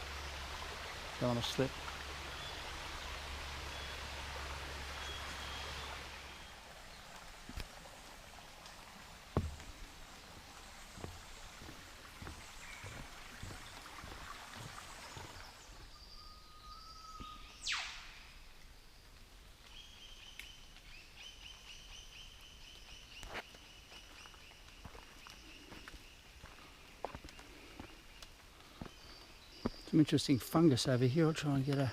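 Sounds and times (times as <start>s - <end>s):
footsteps on wet ground: 7.0s - 16.0s, 19.0s - 30.6s
short whistled bird note: 16.1s - 18.4s
sharp downward bird call: 16.2s - 18.4s.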